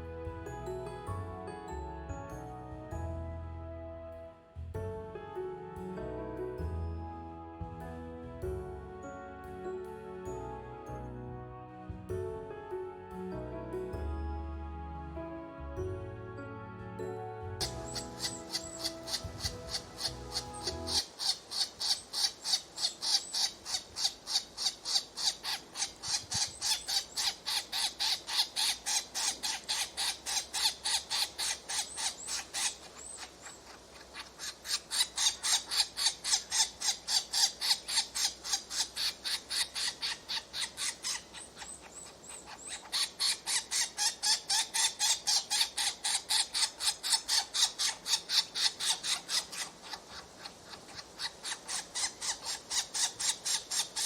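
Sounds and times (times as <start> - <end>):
nestlings begging calls: 17.6 - 54.0.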